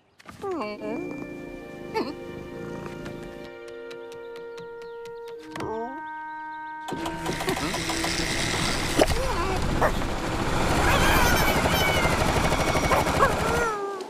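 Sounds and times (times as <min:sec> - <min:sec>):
high whining animal cries: 0:10.8 - 0:14.0.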